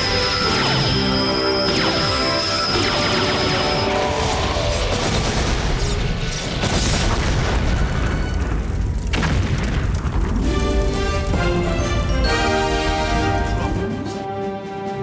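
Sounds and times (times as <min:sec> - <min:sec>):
dramatic background music: 0:00.0 - 0:09.3, 0:09.9 - 0:15.0
explosions booming: 0:03.2 - 0:12.1.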